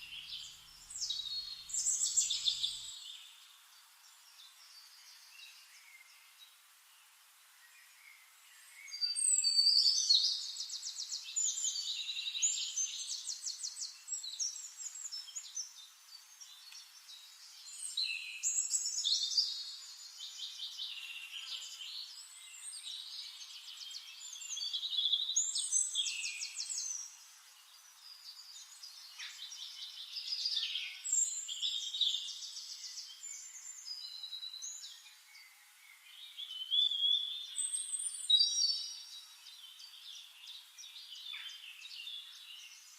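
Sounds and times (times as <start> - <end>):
songbird trilling: 0.0 - 2.9.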